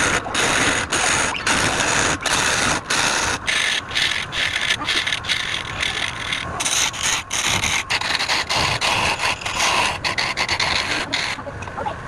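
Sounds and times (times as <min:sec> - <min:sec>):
tool scraping spinning wood: 0:00.0 - 0:11.6.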